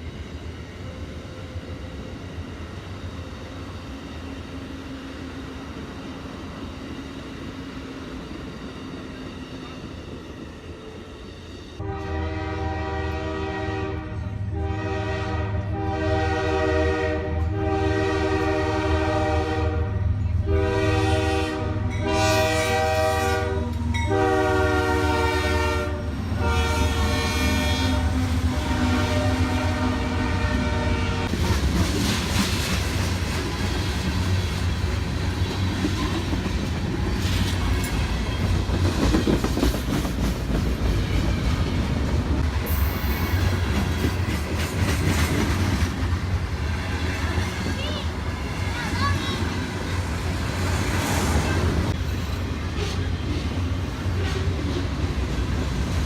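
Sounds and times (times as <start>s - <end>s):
train air horn blasts: 11.8s - 31.3s.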